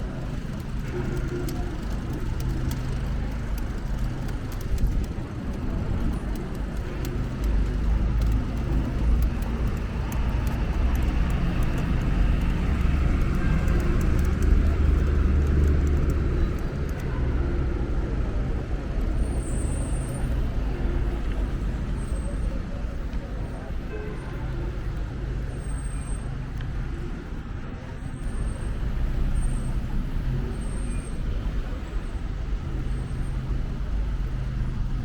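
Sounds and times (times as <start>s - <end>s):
engine low hum: 0.0s - 27.4s
street traffic: 0.0s - 35.0s.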